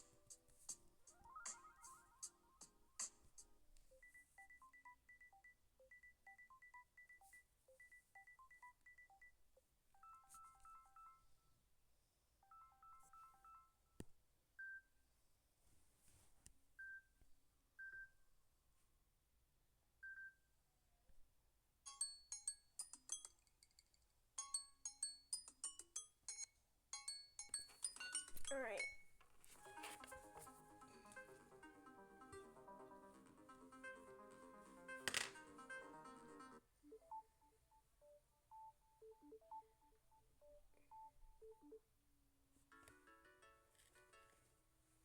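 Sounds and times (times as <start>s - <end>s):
electronic beep ringtone: 1.2s - 2.7s, 33.8s - 41.8s.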